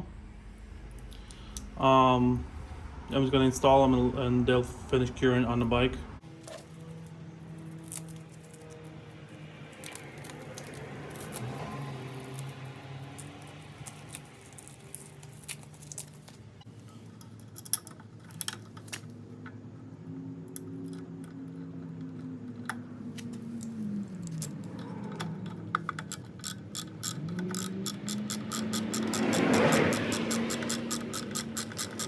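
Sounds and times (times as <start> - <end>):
metallic clicks of tools handled: 6.4 - 19.1, 20.5 - 32.0.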